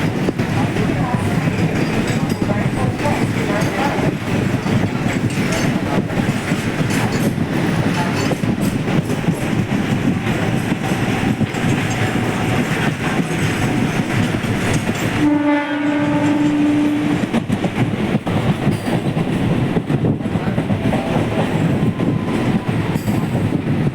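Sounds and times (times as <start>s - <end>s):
train wheels clattering on rails: 0.0s - 23.9s
train horn blast: 15.2s - 17.5s.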